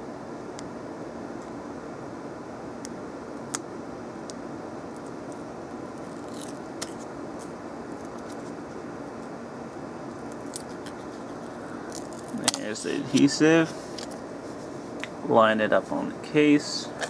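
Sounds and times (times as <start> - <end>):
steady background hum: 0.0 - 17.0.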